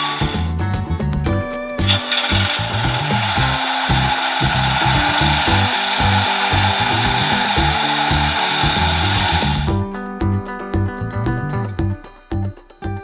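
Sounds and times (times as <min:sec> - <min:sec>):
harsh electronic mechanical noise: 0:01.8 - 0:09.7.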